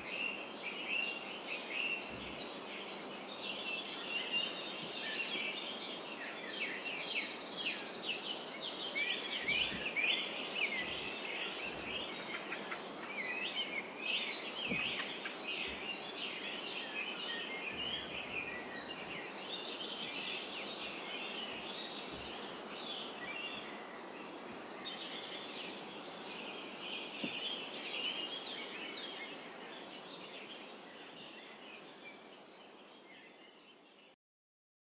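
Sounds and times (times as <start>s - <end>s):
faint background hiss: 0.0s - 34.2s
small birds chirping: 0.0s - 34.2s.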